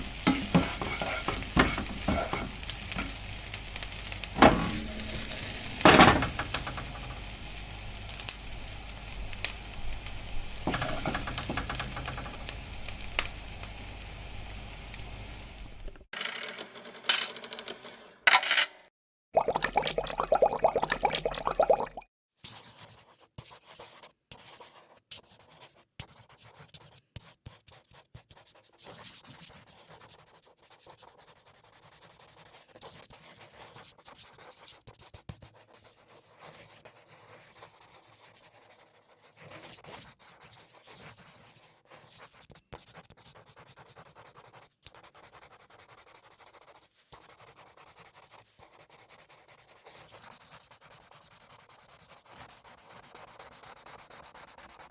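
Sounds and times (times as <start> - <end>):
scratching and rubbing on a surface: 0.0 - 3.2, 22.4 - 54.9.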